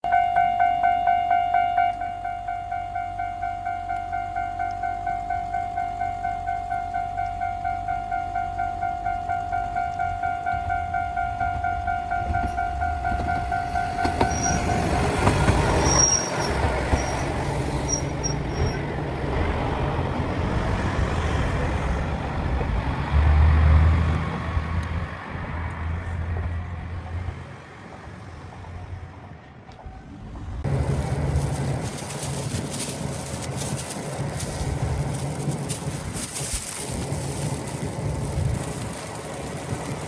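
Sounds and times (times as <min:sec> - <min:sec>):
diesel railcar engine drone: 0:00.0 - 0:40.0
wheel-on-rail rumble: 0:01.0 - 0:40.0
high wheel squeals: 0:08.6 - 0:19.0.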